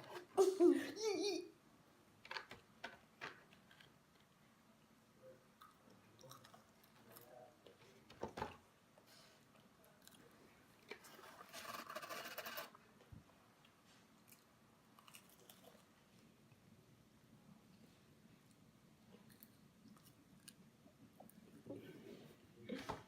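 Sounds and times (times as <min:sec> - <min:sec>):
food chewing and crunching: 0:05.6 - 0:07.4, 0:13.6 - 0:16.3, 0:18.5 - 0:21.6.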